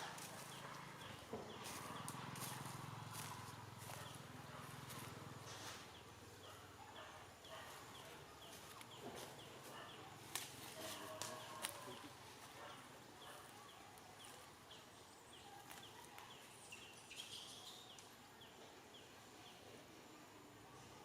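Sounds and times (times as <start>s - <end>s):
small bird chirping: 14.2s - 18.1s.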